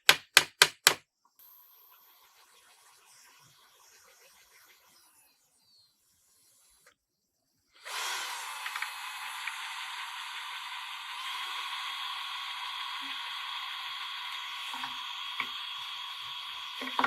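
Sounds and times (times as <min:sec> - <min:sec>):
steady hissing with high whine: 0:07.8 - 0:17.0.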